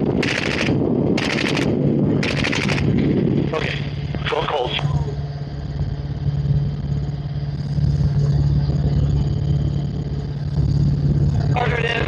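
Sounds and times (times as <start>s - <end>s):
helicopter engine and rotor: 0.0s - 12.0s.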